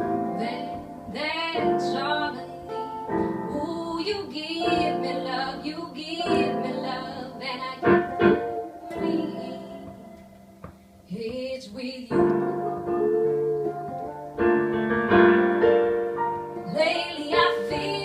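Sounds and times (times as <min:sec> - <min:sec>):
woman singing slow song: 0:00.0 - 0:14.2, 0:16.6 - 0:18.0
piano accompaniment: 0:00.0 - 0:18.0.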